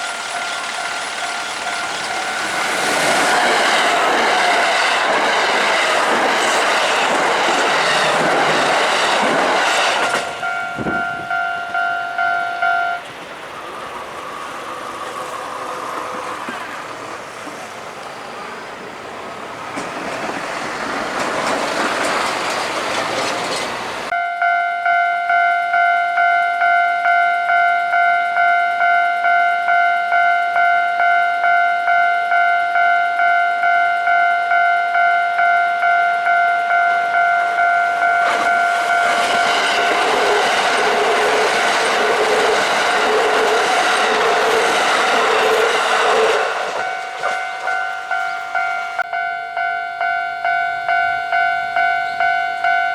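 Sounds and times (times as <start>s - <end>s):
train wheels clattering: 0.0s - 11.1s, 19.4s - 24.1s, 38.0s - 49.0s
road traffic rumble: 0.0s - 24.2s
level crossing bell ringing: 10.2s - 13.1s, 24.1s - 40.3s, 46.7s - 52.9s.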